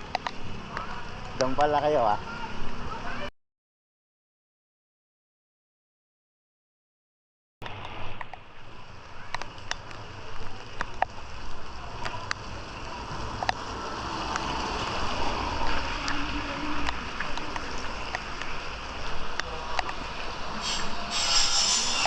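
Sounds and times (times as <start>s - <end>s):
low rumble of floodwater: 0.0s - 3.3s, 7.6s - 22.0s
rain hissing: 0.0s - 3.3s, 7.6s - 22.0s.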